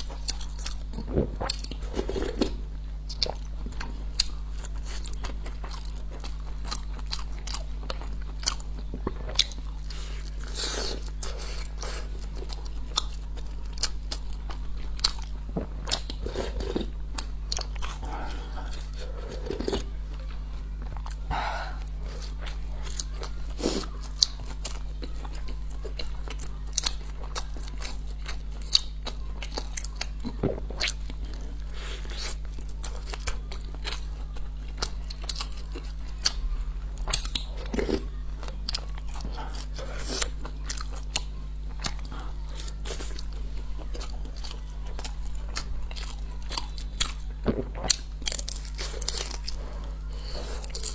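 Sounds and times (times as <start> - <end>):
biting and chewing crunches: 0.0 - 50.9
wet mouth noises: 47.4 - 48.2.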